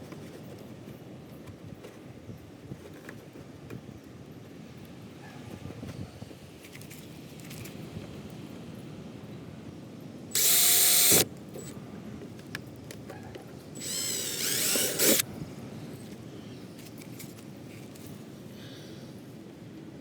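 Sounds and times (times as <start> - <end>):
power drill bursts: 10.4 - 11.7, 13.8 - 15.2.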